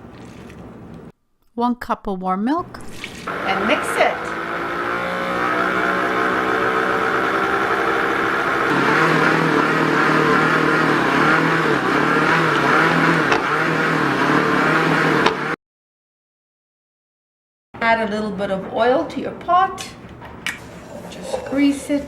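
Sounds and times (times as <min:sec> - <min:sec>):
stand mixer motor running: 0:03.2 - 0:15.6.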